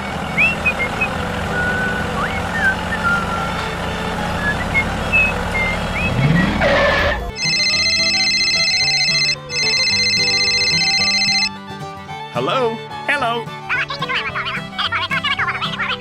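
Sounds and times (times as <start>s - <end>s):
motor running: 0.0s - 12.0s
high whistling chirps: 4.4s - 9.8s
electronic ringing tone: 6.6s - 11.6s.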